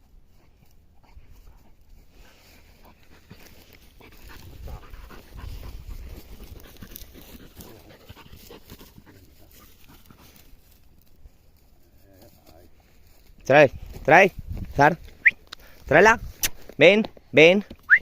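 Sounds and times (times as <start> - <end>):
rustling through undergrowth: 0.0 - 17.3
dog panting hard: 1.0 - 10.6.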